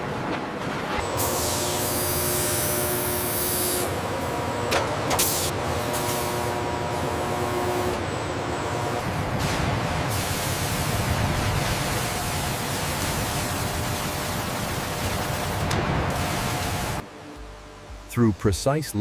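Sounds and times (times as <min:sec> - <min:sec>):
faint hum tones: 0:00.9 - 0:19.0
industrial rushing hiss: 0:01.0 - 0:04.2, 0:08.8 - 0:17.0.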